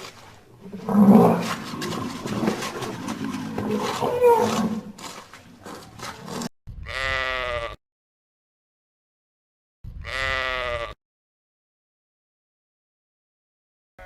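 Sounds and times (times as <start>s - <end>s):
big cat growling and roaring: 0.6s - 6.5s
sheep bleat: 6.8s - 7.8s, 10.0s - 11.0s.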